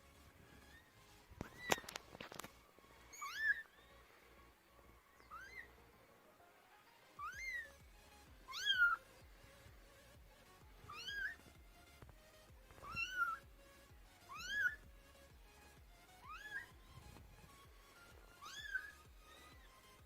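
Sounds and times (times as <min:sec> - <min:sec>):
kitten meowing: 0:01.4 - 0:01.9, 0:03.1 - 0:03.7, 0:05.2 - 0:05.7, 0:07.2 - 0:07.7, 0:08.5 - 0:09.0, 0:10.9 - 0:11.4, 0:12.8 - 0:13.4, 0:14.3 - 0:14.8, 0:16.2 - 0:16.7, 0:18.4 - 0:19.6.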